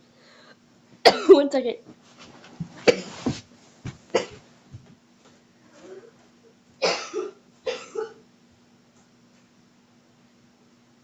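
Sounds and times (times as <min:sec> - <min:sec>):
person coughing: 0:01.1 - 0:01.4, 0:02.8 - 0:03.2, 0:04.1 - 0:04.4, 0:06.8 - 0:08.2.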